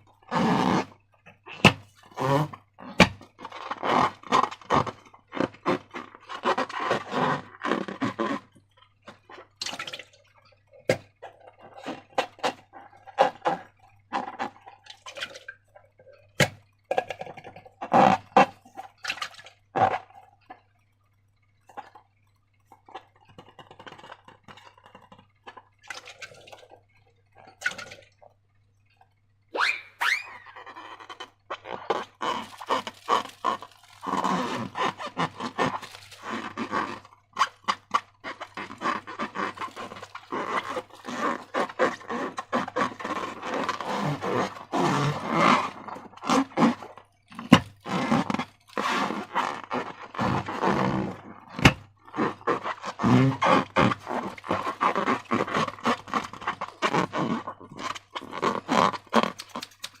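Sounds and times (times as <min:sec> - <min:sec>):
slime squelching by hand: 0:29.6 - 1:00.0.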